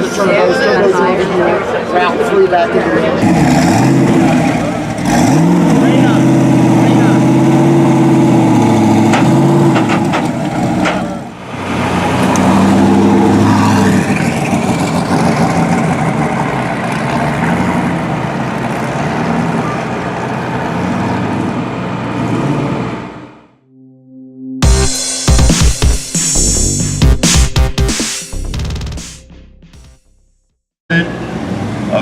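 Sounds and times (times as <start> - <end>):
car engine running: 3.2 - 23.5.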